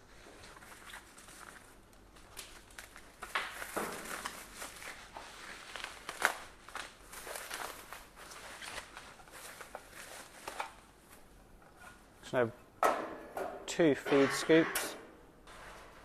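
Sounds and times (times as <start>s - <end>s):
plastic packaging crinkling: 0.3s - 11.4s.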